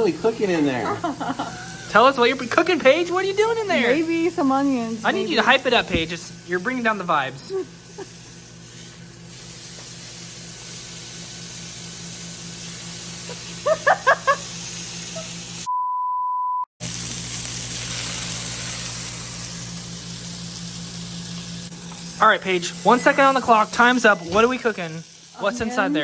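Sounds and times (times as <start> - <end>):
food sizzling in a pan: 0.0 - 15.7, 16.8 - 26.0
censor bleep: 15.7 - 16.7.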